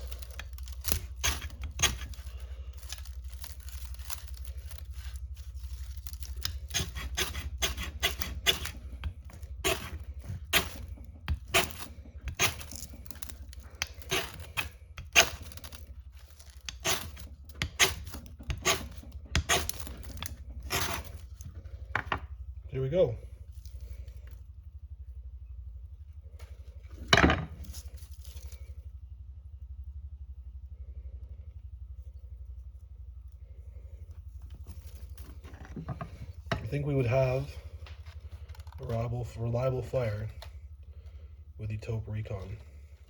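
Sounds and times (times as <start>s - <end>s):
knife scraping fire steel: 0.0s - 21.4s.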